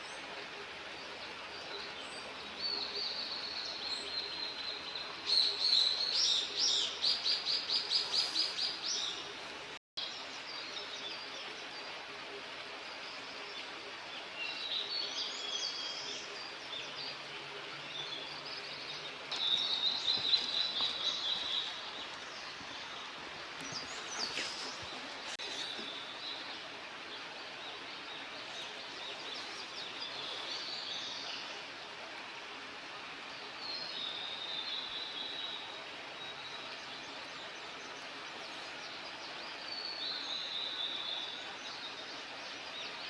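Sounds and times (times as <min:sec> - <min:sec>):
outdoor background hiss: 0:00.0 - 0:43.0.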